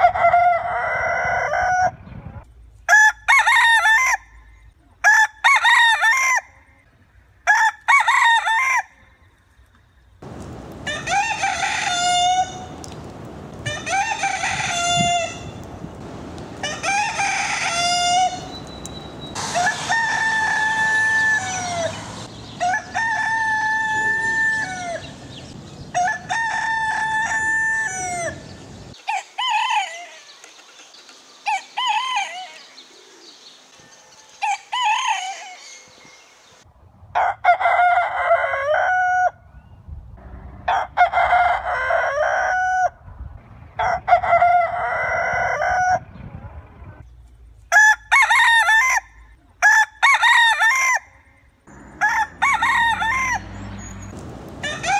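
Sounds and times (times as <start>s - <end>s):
roosters crowing: 0.0s - 2.1s, 7.4s - 9.0s, 10.2s - 30.3s, 34.3s - 35.8s, 37.2s - 39.5s, 40.6s - 43.0s, 43.8s - 46.1s, 47.7s - 54.9s.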